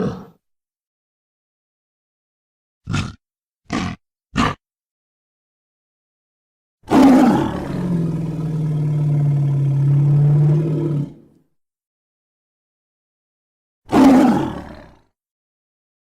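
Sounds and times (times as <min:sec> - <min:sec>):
gorilla roar: 0:00.0 - 0:00.4, 0:02.9 - 0:04.6, 0:06.9 - 0:11.4, 0:13.9 - 0:15.0.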